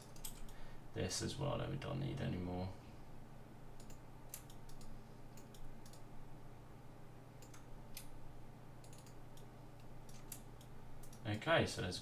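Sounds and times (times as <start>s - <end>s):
low electrical hum: 0.0s - 12.0s
mouse and keyboard clicking: 8.8s - 11.2s.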